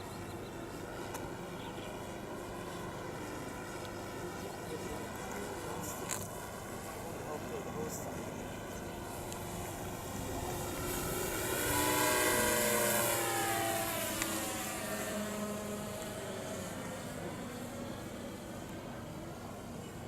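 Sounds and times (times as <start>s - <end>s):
model plane flying past: 0.0s - 20.0s.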